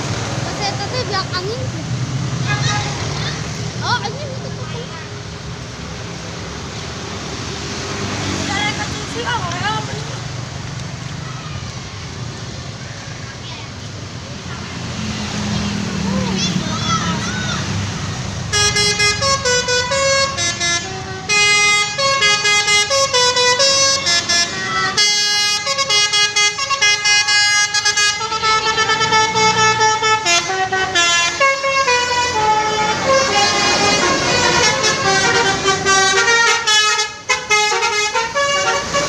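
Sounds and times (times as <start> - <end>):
musical vehicle horn melody: 18.5 - 39.0.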